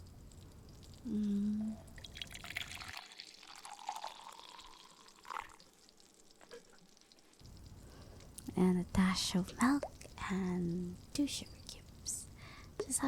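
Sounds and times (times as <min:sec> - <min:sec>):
person humming: 0:01.0 - 0:01.8
coffee pouring into a cup: 0:01.5 - 0:06.8.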